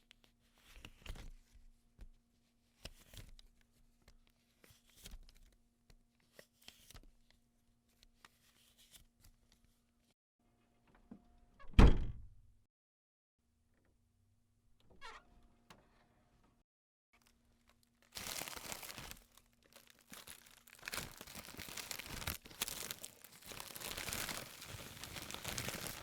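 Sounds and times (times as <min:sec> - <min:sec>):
door shutting with thunk: 0:11.6 - 0:12.4
banknotes rustling: 0:18.1 - 0:26.0.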